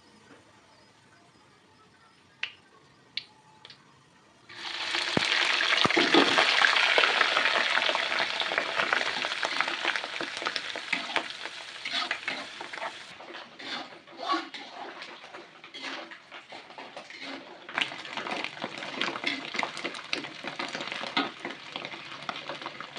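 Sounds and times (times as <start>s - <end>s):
food sizzling in hot oil: 4.5s - 22.9s.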